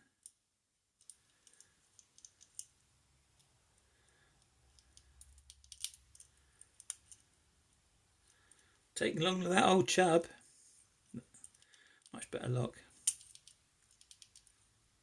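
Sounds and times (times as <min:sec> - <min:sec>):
lock pick metallic clicks: 0:04.7 - 0:07.2, 0:13.0 - 0:14.6.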